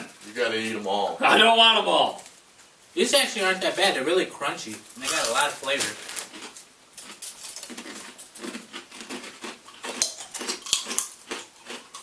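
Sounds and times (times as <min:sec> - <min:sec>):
pork rinds being chewed: 0:04.7 - 0:12.0.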